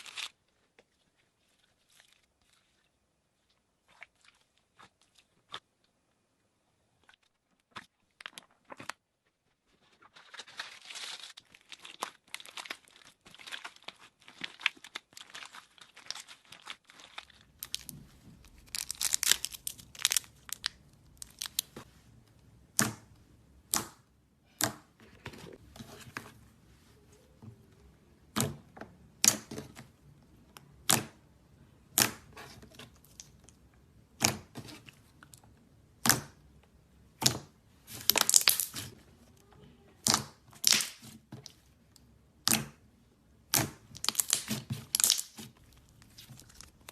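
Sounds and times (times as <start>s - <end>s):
slime crackling and popping: 11.0s - 21.8s, 37.2s - 39.0s, 40.0s - 41.6s, 43.4s - 46.9s.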